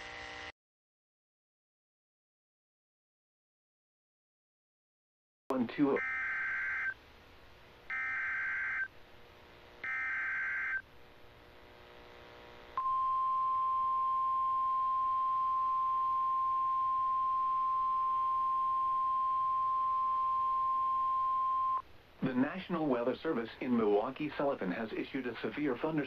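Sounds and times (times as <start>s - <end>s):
steady warning tone: 5.6s - 7.0s, 7.9s - 8.9s, 9.8s - 10.8s.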